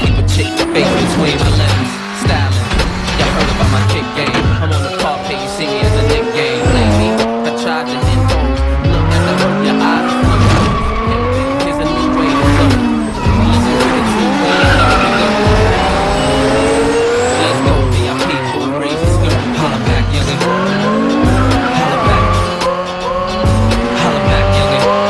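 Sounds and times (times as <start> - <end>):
car engine revving: 0.0 - 25.0
rap music with heavy bass beat: 0.0 - 25.0
tyres squealing: 0.0 - 25.0.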